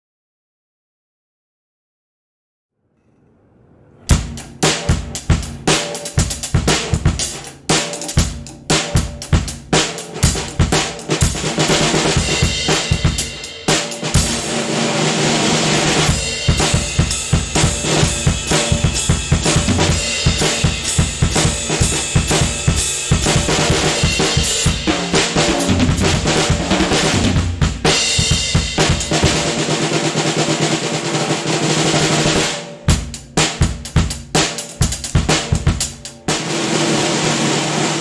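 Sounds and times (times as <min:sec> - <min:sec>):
snare drum strokes and rolls: 0:04.1 - 0:38.0.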